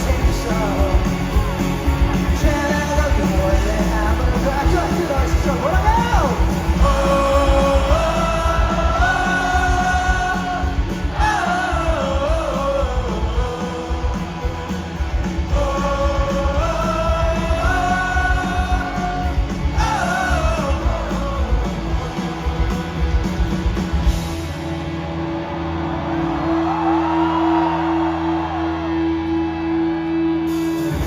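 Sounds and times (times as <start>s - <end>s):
person singing: 0.0s - 23.8s
rock band playing: 0.0s - 31.0s.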